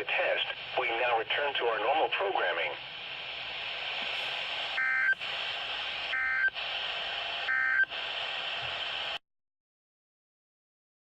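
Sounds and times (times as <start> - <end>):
radio hiss: 0.0 - 9.2
alert data tone bursts: 4.8 - 5.2, 6.1 - 6.5, 7.5 - 7.9.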